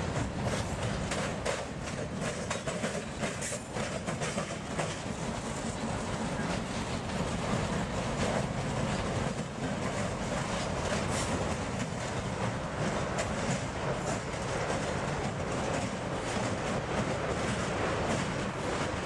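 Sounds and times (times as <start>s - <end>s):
train wheels rumbling on rails: 0.0s - 19.0s
faint clicking of rail joints: 0.1s - 19.0s.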